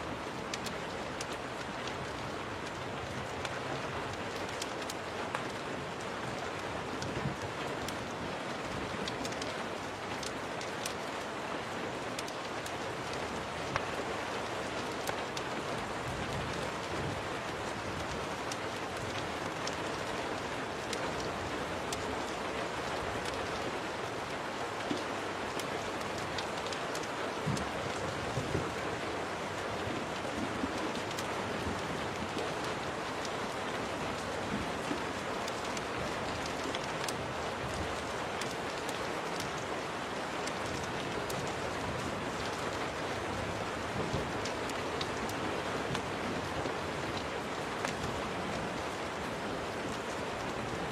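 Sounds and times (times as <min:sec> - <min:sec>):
steady rain falling: 0:00.0 - 0:50.9
wood fire crackling: 0:00.2 - 0:46.6, 0:47.2 - 0:50.9.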